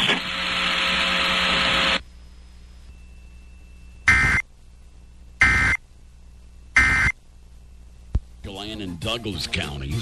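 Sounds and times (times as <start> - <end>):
faint hum: 0.0 - 10.0
digital data tones: 3.5 - 4.4, 5.4 - 5.8, 6.8 - 7.2.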